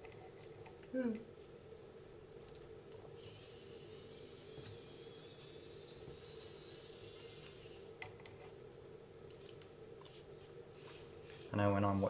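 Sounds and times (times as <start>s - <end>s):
steady hiss: 3.2s - 8.0s, 10.0s - 12.0s.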